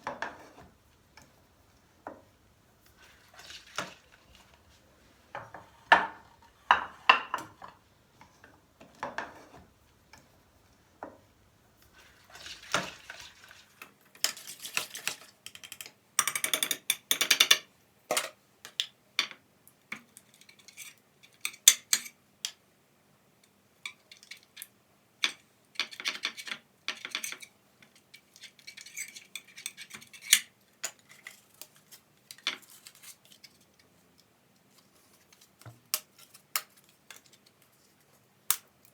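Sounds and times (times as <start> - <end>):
stirring in a pan: 2.1 - 9.7, 11.8 - 15.4
utensils clinking on dishes: 25.3 - 31.4.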